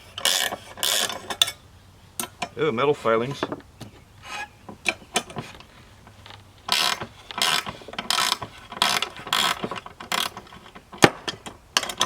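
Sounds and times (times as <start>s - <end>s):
ratchet wrench ratcheting: 0.1s - 1.6s, 6.7s - 10.8s.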